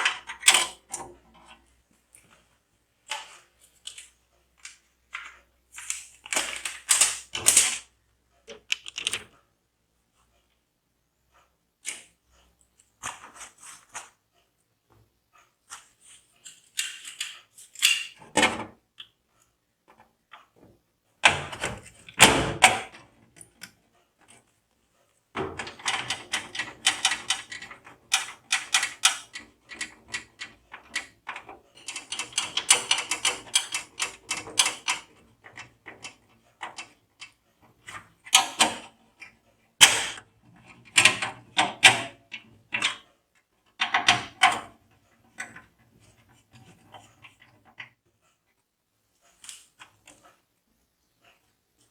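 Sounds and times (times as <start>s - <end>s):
sharp clicks and knocks: 8.5s - 9.3s, 25.4s - 38.9s.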